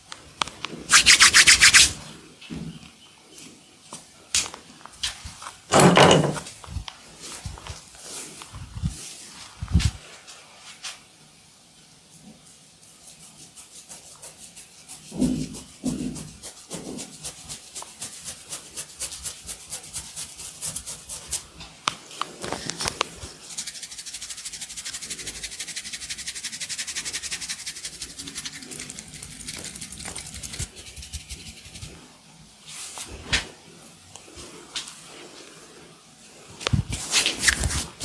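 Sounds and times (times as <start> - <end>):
rhythmic rubbing and scraping: 23.4 - 32.0.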